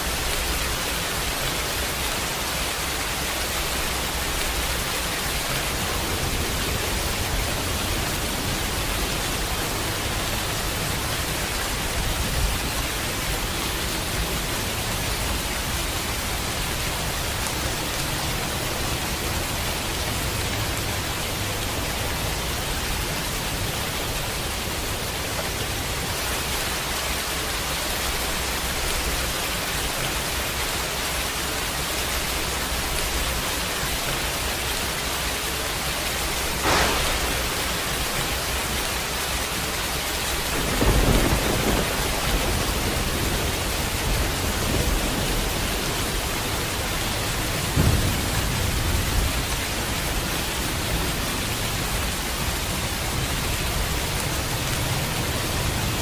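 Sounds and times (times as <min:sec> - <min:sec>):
steady rain hissing: 0:00.0 - 0:56.0
thunder crack: 0:36.5 - 0:38.8, 0:40.4 - 0:46.3, 0:47.5 - 0:50.2
rumble of thunder: 0:36.6 - 0:38.6, 0:40.4 - 0:50.9.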